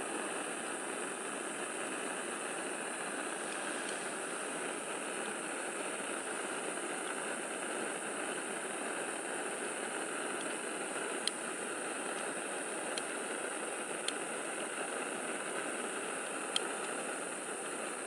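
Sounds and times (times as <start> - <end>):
rushing hiss: 3.1 - 5.0
faint ticks: 3.4 - 4.1, 10.3 - 10.6, 12.1 - 13.4, 14.0 - 14.3, 16.2 - 17.0.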